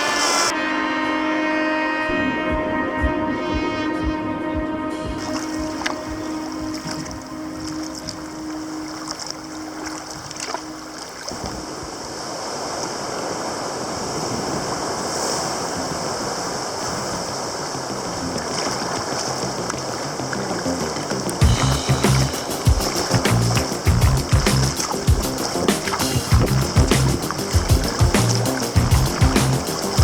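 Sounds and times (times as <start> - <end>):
held note of background music: 0.0 - 12.2, 21.3 - 30.0
sea surf washing: 0.0 - 30.0.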